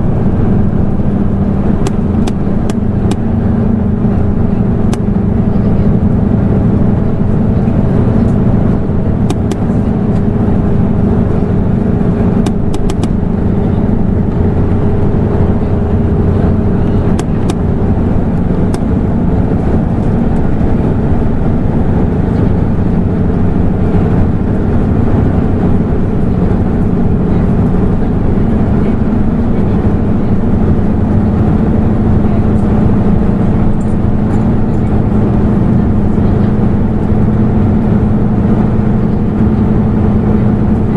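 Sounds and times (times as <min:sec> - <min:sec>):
bus engine drone: 0:00.0 - 0:40.9.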